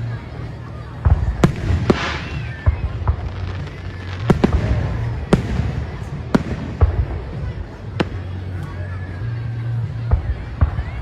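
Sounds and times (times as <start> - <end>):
steady low rumble: 0.0 - 11.0
fireworks bangs: 1.0 - 8.5.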